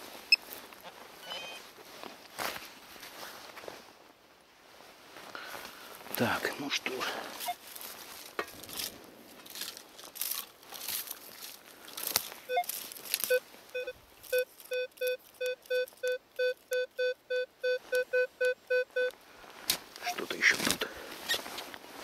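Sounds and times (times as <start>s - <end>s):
ground crackling and rustling: 0.0s - 16.0s, 19.2s - 22.0s
metal detector beeping: 1.2s - 1.6s, 12.5s - 19.1s.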